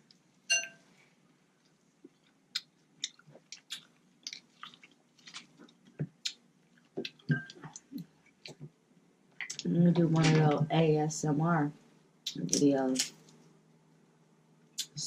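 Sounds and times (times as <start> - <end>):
sharp ringing sound: 0.5 - 0.8
person chewing with wet smacks: 1.6 - 8.7.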